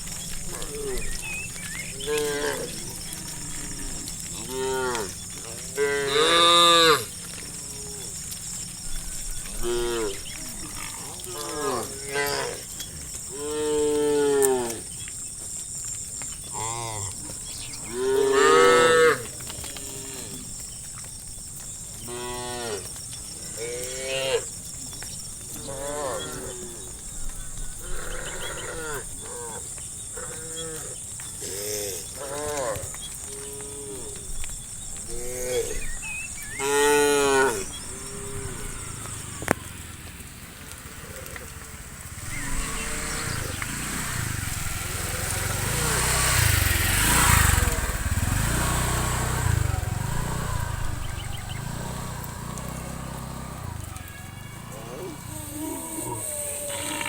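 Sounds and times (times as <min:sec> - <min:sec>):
cattle mooing: 0:00.1 - 0:08.4, 0:09.4 - 0:14.9, 0:16.5 - 0:20.6, 0:23.5 - 0:24.5, 0:25.5 - 0:27.1, 0:27.8 - 0:39.7, 0:40.8 - 0:57.0.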